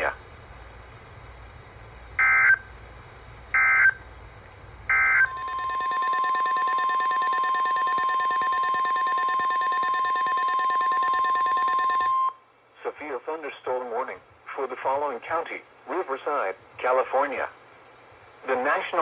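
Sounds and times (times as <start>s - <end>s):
digital data bursts: 5.2s - 12.1s
steady attention tone: 5.2s - 12.3s.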